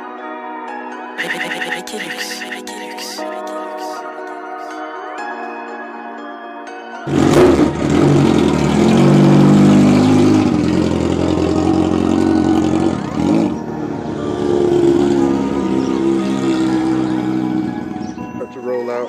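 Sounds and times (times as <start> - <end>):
motorcycle engine under throttle: 7.1 - 13.7.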